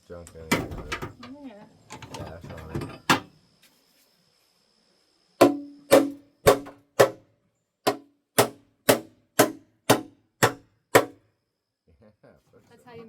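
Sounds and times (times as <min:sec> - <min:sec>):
hammer striking metal: 0:05.4 - 0:07.2, 0:07.9 - 0:11.2.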